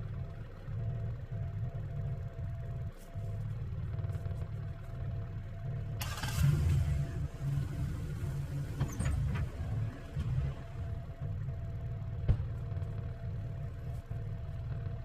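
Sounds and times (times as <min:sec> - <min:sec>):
engine running low: 0:00.0 - 0:15.0.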